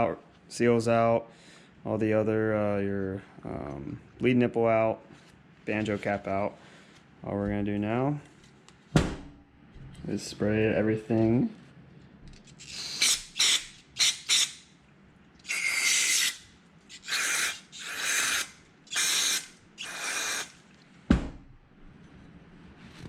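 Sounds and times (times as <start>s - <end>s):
aerosol spray hissing: 17.0s - 20.5s.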